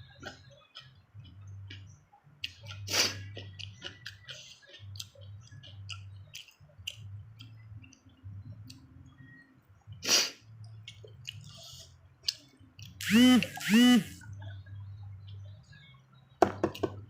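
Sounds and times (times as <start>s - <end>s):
crunching and chewing: 0.0s - 8.0s, 10.6s - 14.6s
low steady hum: 0.0s - 17.0s.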